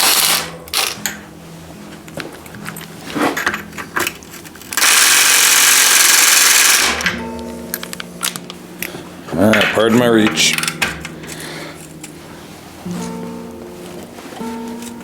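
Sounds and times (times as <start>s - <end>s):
metal tools clinking on bicycle frame: 7.7s - 11.9s.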